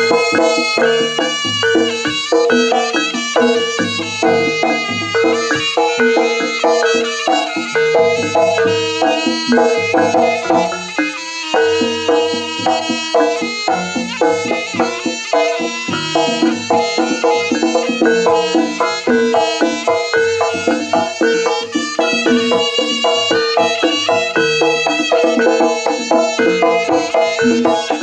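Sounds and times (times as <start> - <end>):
drums and metal percussion: 0.0 - 28.0
reed pipe melody: 0.0 - 28.0.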